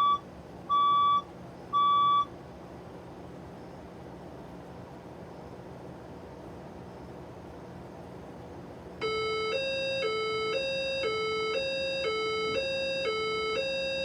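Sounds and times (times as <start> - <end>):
two-tone fire alarm signal: 0.0 - 2.3, 9.0 - 14.0.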